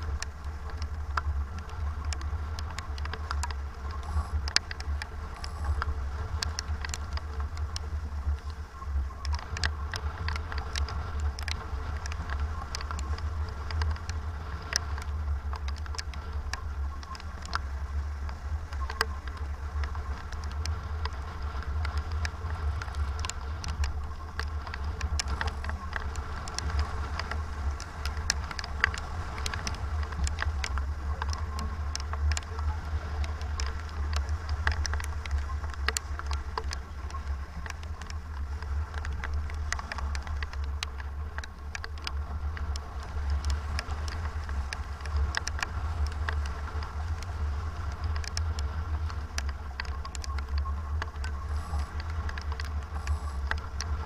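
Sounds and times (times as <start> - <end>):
water drops ticking: 0.0 - 54.0
wind buffeting microphone: 0.0 - 54.0.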